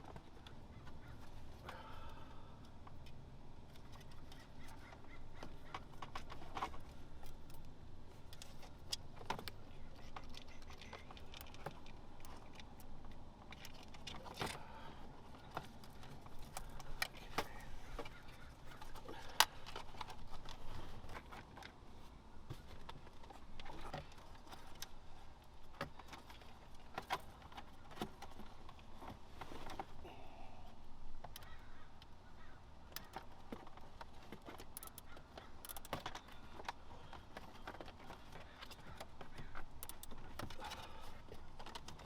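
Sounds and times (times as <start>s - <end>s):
plastic clicks: 32.8s - 42.0s
cable and zip ties rattling: 32.9s - 42.0s.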